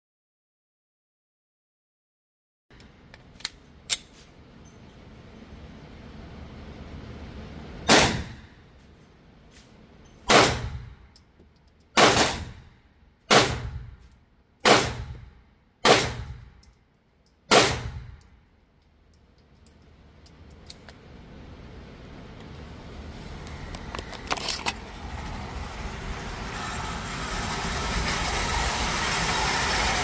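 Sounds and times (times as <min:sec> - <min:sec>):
single gunshots with ringing tail: 0:07.9 - 0:08.4, 0:14.6 - 0:15.1.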